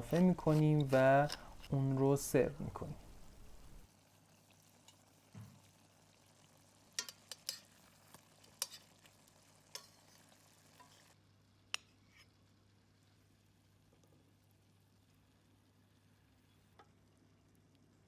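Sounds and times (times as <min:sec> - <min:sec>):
utensil tapping a pan: 0:07.0 - 0:07.6.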